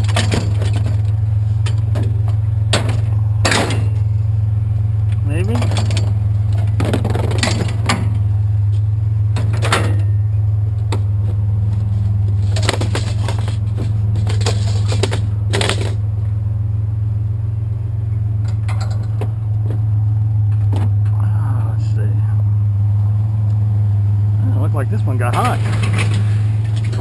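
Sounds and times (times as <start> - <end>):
metal junk clanking: 0.0 - 4.2, 5.4 - 8.3, 9.3 - 11.4, 12.3 - 16.0, 18.4 - 19.8, 25.3 - 27.0
truck engine idling: 0.0 - 27.0.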